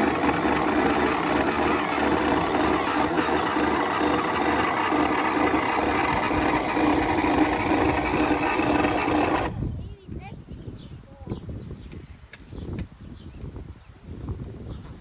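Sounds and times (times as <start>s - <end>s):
electric motor pump whirring: 0.0s - 9.8s.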